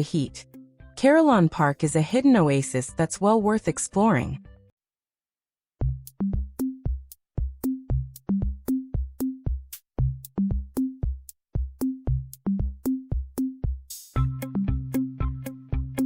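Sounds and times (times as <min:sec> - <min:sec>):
drum machine beat: 0:05.8 - 0:14.9.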